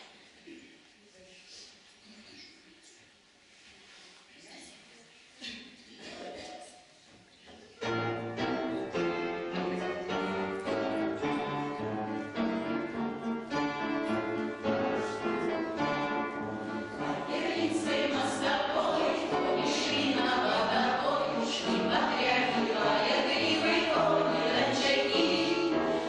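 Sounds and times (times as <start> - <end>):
choir singing: 7.9 - 26.0.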